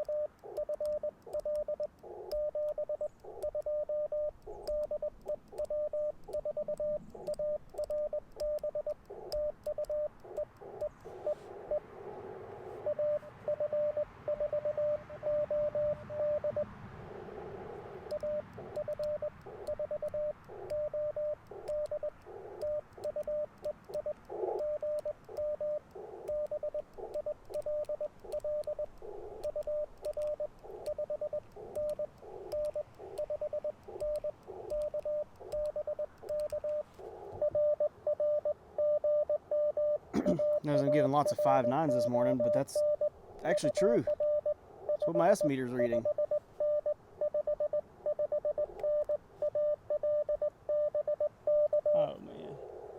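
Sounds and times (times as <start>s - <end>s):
morse code tone: 0.0s - 11.8s, 12.8s - 16.7s, 18.0s - 36.8s, 37.4s - 52.1s
radio band noise hiss: 9.1s - 13.5s, 40.2s - 44.2s, 44.8s - 46.1s.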